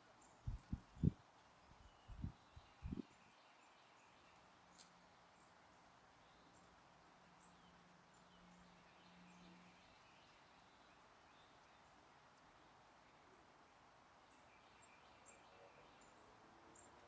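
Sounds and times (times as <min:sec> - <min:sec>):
distant birds chirping: 0:00.4 - 0:01.2, 0:01.9 - 0:03.1.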